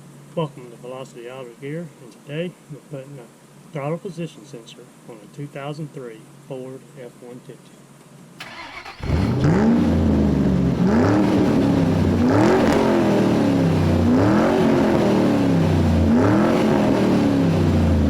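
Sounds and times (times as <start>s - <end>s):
engine revving: 8.4s - 18.0s.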